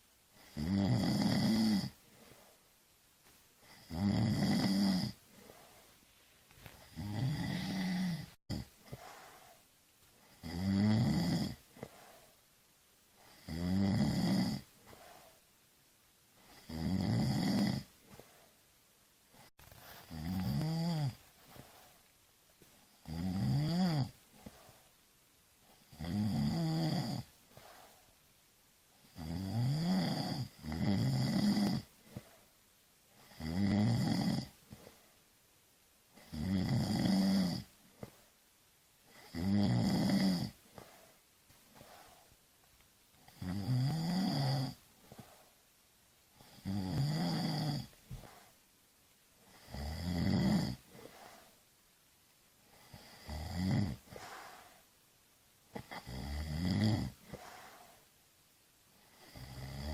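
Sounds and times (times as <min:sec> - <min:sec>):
person snoring: 0:00.4 - 0:02.0, 0:03.6 - 0:05.9, 0:06.8 - 0:09.6, 0:10.3 - 0:12.2, 0:13.2 - 0:15.4, 0:16.4 - 0:18.3, 0:19.4 - 0:21.9, 0:23.0 - 0:24.8, 0:25.8 - 0:28.0, 0:29.0 - 0:32.3, 0:33.2 - 0:35.0, 0:36.2 - 0:38.2, 0:39.1 - 0:41.1, 0:43.2 - 0:45.4, 0:46.4 - 0:48.5, 0:49.5 - 0:51.6, 0:52.7 - 0:54.8, 0:55.8 - 0:58.1, 0:59.0 - 0:59.9.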